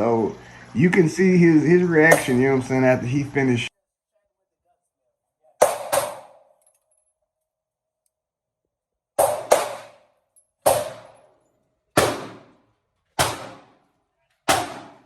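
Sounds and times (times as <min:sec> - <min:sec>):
pistol shots echoing: 0:05.6 - 0:06.4, 0:09.2 - 0:11.3, 0:11.9 - 0:12.6, 0:13.2 - 0:15.0.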